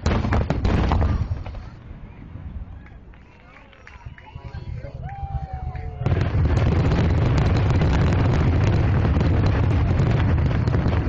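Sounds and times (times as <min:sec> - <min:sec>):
fireworks crackling and banging: 0:00.0 - 0:02.1, 0:05.0 - 0:11.0
deep rumble: 0:04.6 - 0:11.0.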